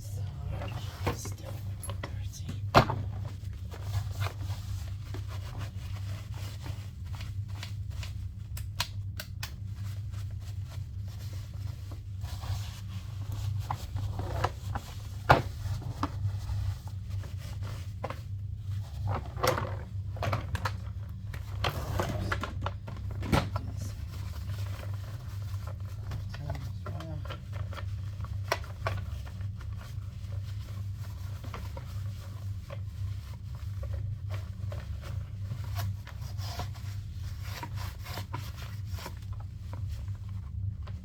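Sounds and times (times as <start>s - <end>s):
paper towel rubbing on plastic: 0.0s - 8.5s, 9.5s - 41.0s
steady low hum: 0.0s - 8.7s.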